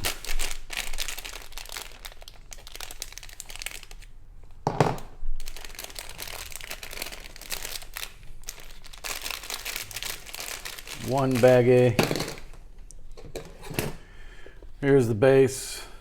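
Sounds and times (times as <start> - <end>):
packaging crinkling and rustling: 0.0 - 4.1, 5.0 - 12.6.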